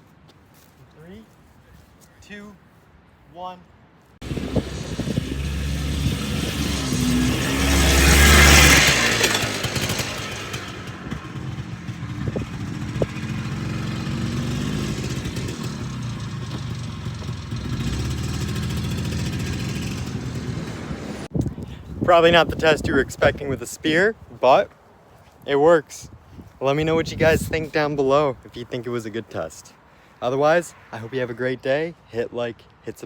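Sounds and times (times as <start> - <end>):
engine running with a surge: 4.2 - 21.3.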